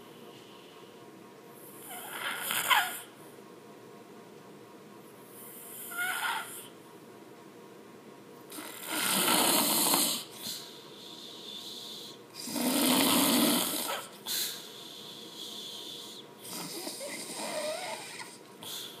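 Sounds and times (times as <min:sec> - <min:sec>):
loud rasping snoring: 0:01.9 - 0:02.8, 0:08.5 - 0:10.3, 0:12.4 - 0:14.1, 0:15.6 - 0:18.4
quiet breathing: 0:10.1 - 0:12.4, 0:14.2 - 0:19.0.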